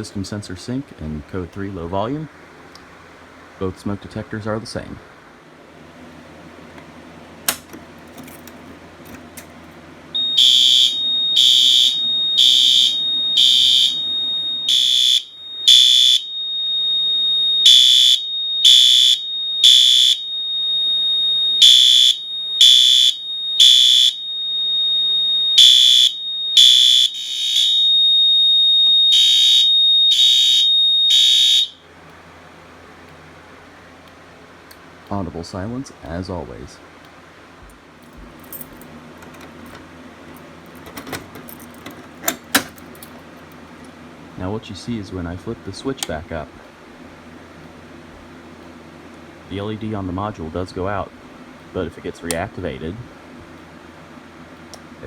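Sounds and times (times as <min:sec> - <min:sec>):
steady high tone: 0:10.2 - 0:20.2
alarm horn blasts: 0:10.2 - 0:31.9.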